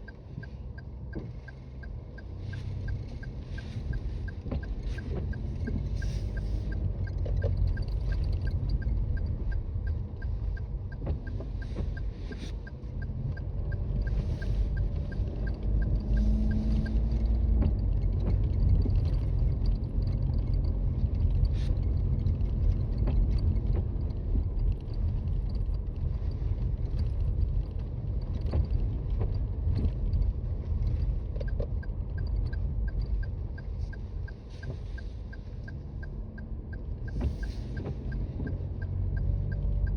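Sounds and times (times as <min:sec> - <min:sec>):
light regular ticking: 0:00.0 - 0:39.9
road and tyre rumble: 0:00.0 - 0:39.9
car engine revving: 0:01.6 - 0:23.9.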